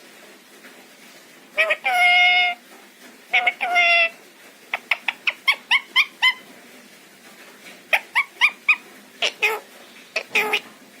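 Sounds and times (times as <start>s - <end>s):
parrot harsh calls: 1.6s - 2.6s, 3.3s - 6.5s, 7.9s - 10.7s
parrot squeaky chirps: 1.6s - 2.6s, 3.3s - 6.5s, 7.9s - 10.7s.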